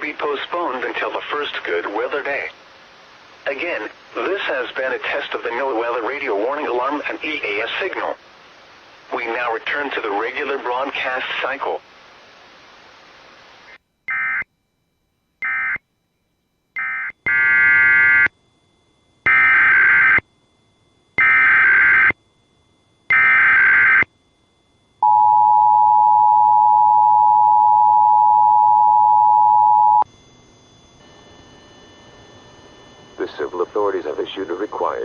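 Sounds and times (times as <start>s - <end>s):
two-tone attention signal: 25.0s - 30.0s.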